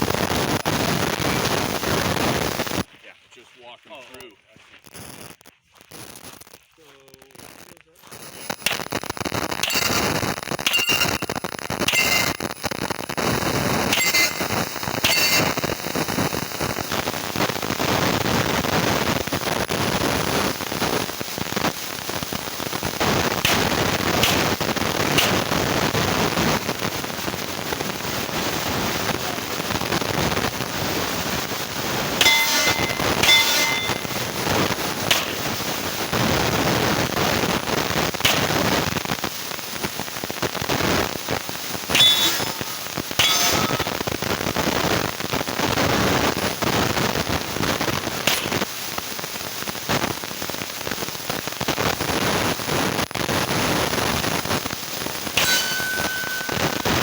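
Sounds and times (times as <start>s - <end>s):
crackling hiss: 0.0s - 57.0s
steel targets clanging: 9.6s - 12.5s, 13.9s - 16.0s, 23.4s - 25.7s, 32.2s - 35.7s, 38.2s - 38.7s, 41.9s - 44.1s, 48.3s - 48.6s, 55.4s - 57.0s
pistol shots: 38.2s - 38.7s.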